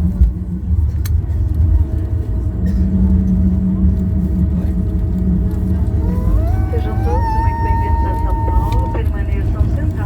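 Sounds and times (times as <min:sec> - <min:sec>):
airliner engine rumble: 0:00.0 - 0:10.0.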